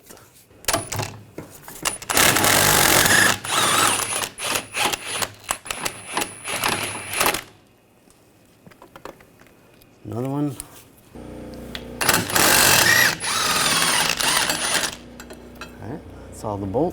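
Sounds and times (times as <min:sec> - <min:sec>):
impact wrench hammering: 0:01.9 - 0:07.4, 0:12.0 - 0:15.4.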